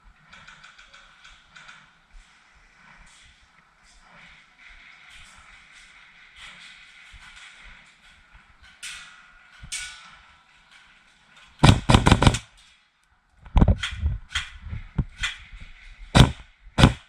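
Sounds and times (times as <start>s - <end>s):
airsoft gun shots: 11.6s - 12.4s, 16.2s - 17.0s.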